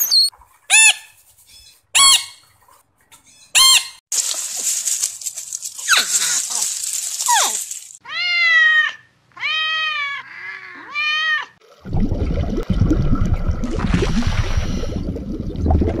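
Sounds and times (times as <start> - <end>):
cat meowing: 8.0 - 11.6.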